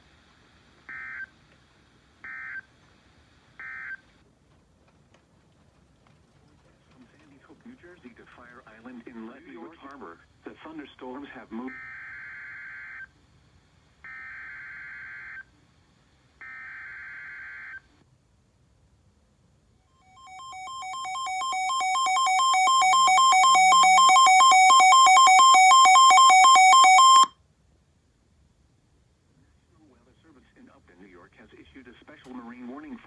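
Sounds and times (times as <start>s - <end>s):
alternating electronic alarm beeps: 20.0s - 27.3s.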